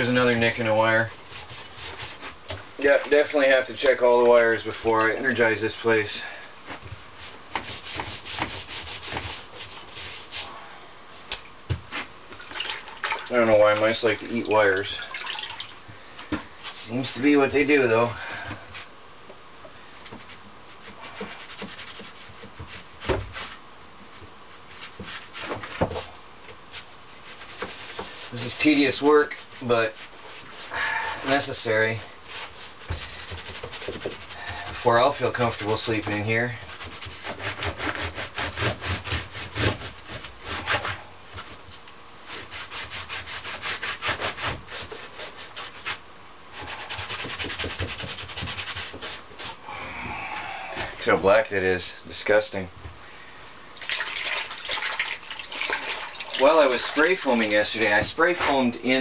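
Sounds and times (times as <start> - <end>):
scrubbing strokes on a surface: 0.0 - 5.6, 7.2 - 10.6, 20.2 - 23.6, 27.2 - 41.0, 42.3 - 49.6, 54.0 - 59.0.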